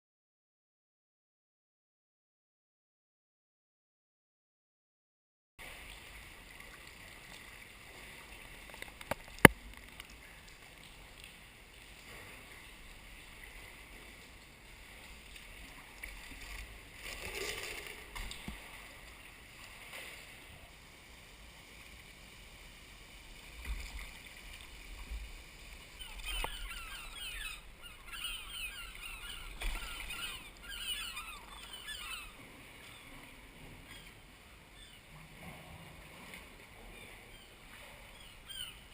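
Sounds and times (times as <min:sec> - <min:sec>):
water around paddled kayak: 0:05.6 - 0:38.9
birds calling: 0:26.0 - 0:33.2, 0:36.9 - 0:38.9.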